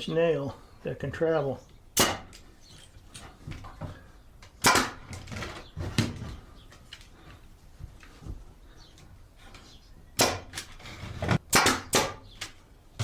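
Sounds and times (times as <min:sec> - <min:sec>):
pneumatic nailer shots: 0:04.6 - 0:05.2, 0:10.2 - 0:12.3.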